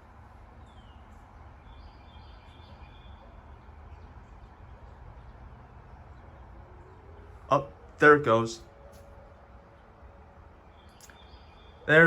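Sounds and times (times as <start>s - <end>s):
low outdoor rumble: 0.0s - 12.0s
faint bird chirps: 0.6s - 7.4s, 10.6s - 12.0s.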